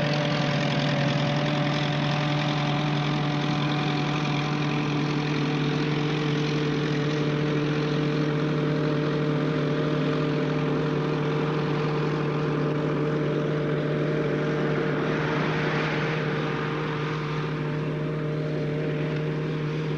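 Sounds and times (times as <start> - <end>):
tank engine humming: 0.0 - 19.9.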